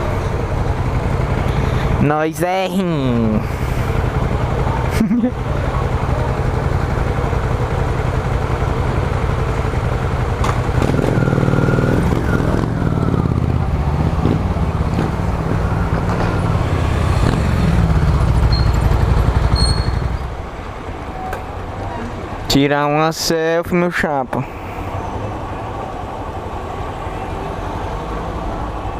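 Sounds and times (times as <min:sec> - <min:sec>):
motorcycle engine running: 0:00.0 - 0:21.7.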